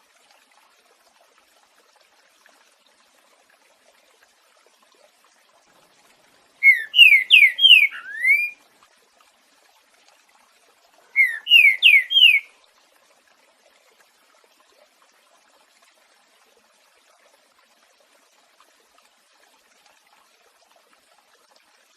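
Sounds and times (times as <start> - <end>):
bird whistling song: 6.6 - 8.6, 11.2 - 12.5.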